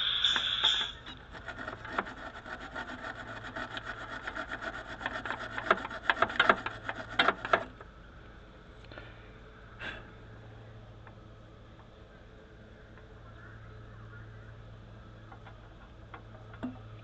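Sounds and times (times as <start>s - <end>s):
scraping strokes: 0.0s - 7.6s.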